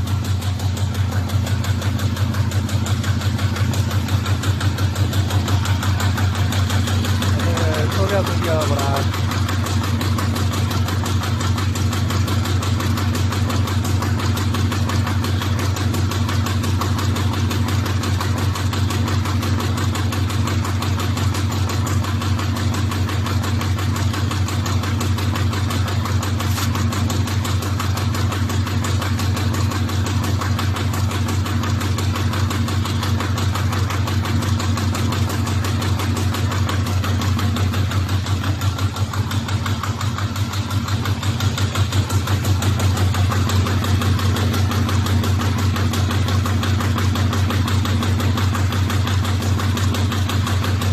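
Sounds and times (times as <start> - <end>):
paper bag machine running: 2.2 - 12.3, 25.0 - 29.3, 35.8 - 48.0, 50.4 - 50.9.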